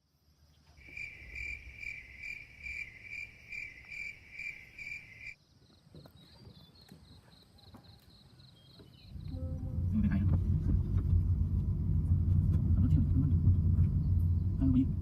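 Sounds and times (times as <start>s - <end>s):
high insect trill: 0.0s - 5.8s
insects chirping: 0.0s - 15.0s.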